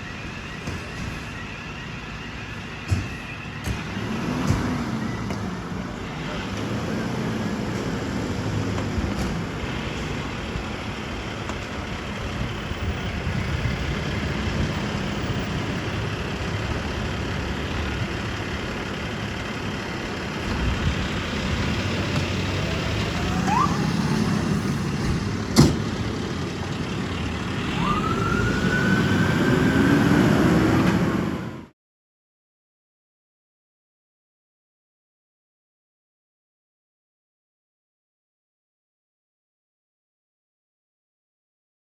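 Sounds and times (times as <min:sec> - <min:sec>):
siren wailing: 0:00.0 - 0:10.9, 0:20.9 - 0:25.0, 0:27.0 - 0:31.7
fire engine engine running: 0:00.0 - 0:31.7.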